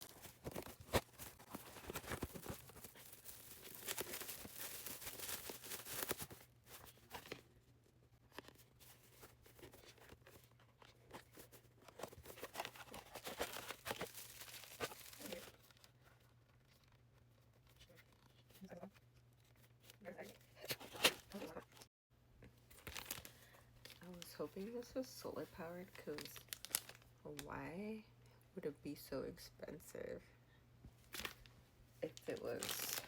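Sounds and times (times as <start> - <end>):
packaging rustling and tearing: 0.0 - 7.4, 8.3 - 17.0, 22.7 - 24.3, 26.0 - 27.0, 32.2 - 33.0.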